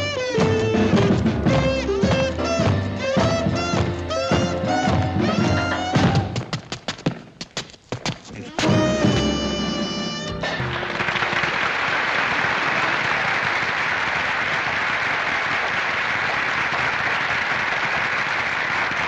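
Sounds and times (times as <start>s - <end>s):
band chord: 8.6s - 10.9s
audience applauding: 9.1s - 19.0s.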